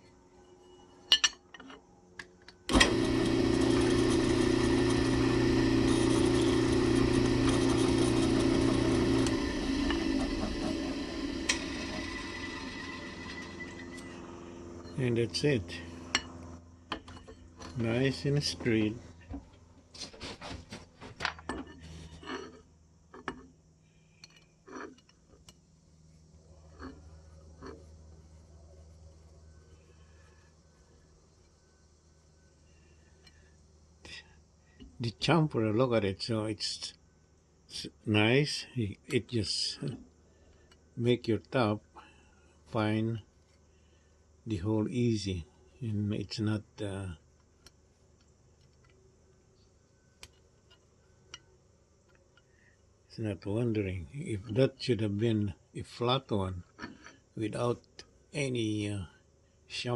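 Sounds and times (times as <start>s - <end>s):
steady low hum: 0.0s - 59.9s
drill press motor humming: 2.6s - 19.6s
bit cutting steel: 2.7s - 15.1s.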